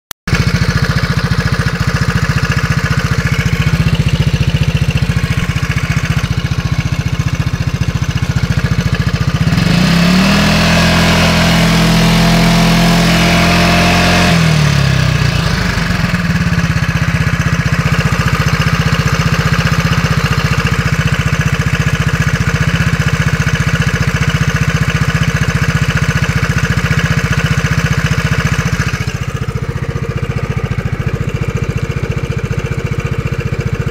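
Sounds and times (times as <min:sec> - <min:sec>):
scooter engine idling with clatter: 0:00.3 - 0:33.9
scooter engine revving: 0:00.3 - 0:33.9.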